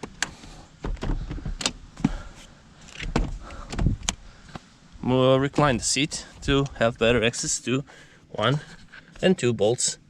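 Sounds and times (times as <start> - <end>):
car seat clicks and clunks: 0.0 - 2.2, 2.9 - 4.2.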